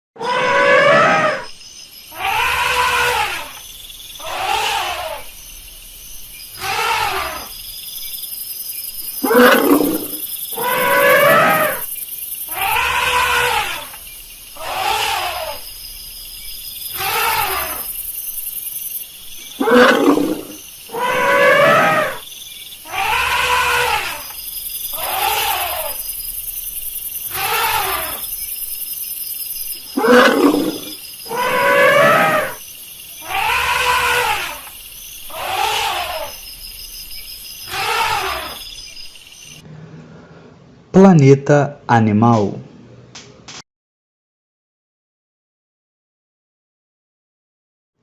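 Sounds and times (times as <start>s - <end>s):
elephant trumpeting: 0.2s - 1.5s, 2.1s - 3.6s, 4.2s - 5.4s, 6.6s - 7.5s, 9.2s - 11.8s, 12.5s - 14.0s, 14.6s - 15.6s, 16.9s - 17.9s, 19.5s - 22.2s, 22.8s - 26.0s, 27.3s - 28.3s, 29.9s - 32.6s, 33.2s - 36.5s, 37.6s - 38.9s.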